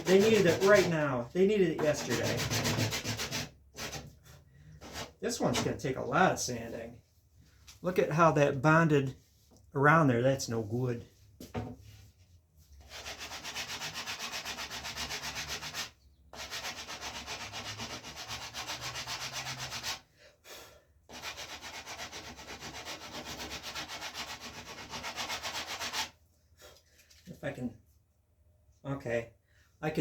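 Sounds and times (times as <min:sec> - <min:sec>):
sandpaper rubbing on rawhide: 0:00.0 - 0:00.9, 0:12.9 - 0:20.0, 0:21.1 - 0:26.1.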